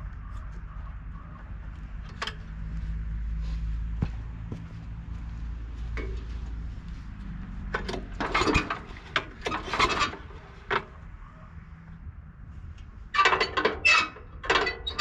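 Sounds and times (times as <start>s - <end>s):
rubbing scraping and clinking: 7.8s - 11.0s.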